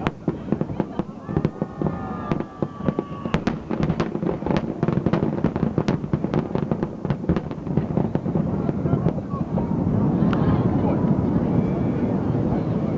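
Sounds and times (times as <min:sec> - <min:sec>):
firework whistles: 0:00.0 - 0:09.3
fireworks bangs and crackling: 0:00.0 - 0:12.9.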